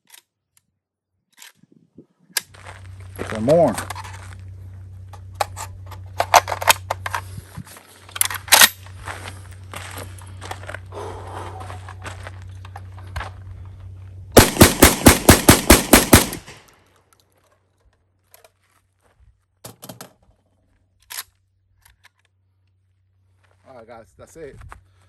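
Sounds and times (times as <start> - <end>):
shotgun fired rapidly: 14.4 - 16.6.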